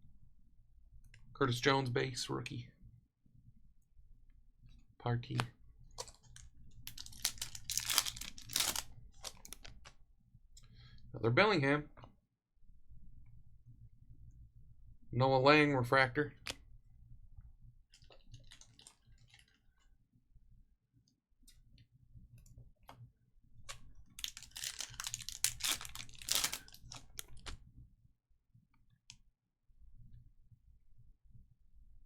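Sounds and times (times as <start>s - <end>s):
cards rustling: 6.0s - 9.9s, 23.7s - 27.6s.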